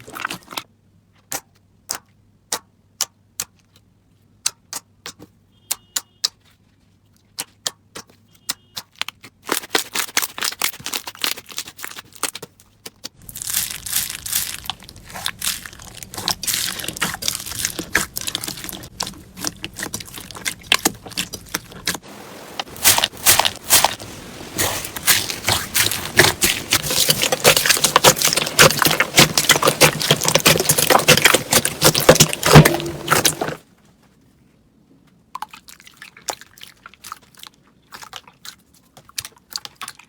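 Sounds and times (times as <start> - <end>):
slime clicking and crackling: 7.2 - 33.6.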